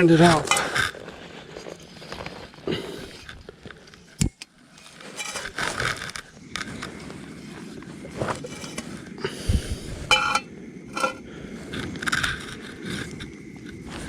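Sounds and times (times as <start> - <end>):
cooking gear clattering: 0.0 - 0.9, 4.8 - 6.2, 8.3 - 9.0, 10.1 - 11.2
light knocks and scrapes: 4.8 - 5.8, 8.2 - 9.0, 10.1 - 11.2.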